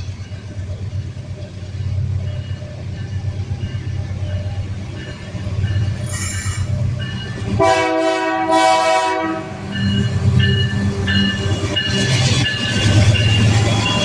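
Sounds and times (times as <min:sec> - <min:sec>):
train low rumble: 0:00.0 - 0:14.0
wheels squealing: 0:04.2 - 0:07.4
locomotive air horn blast: 0:07.6 - 0:09.6.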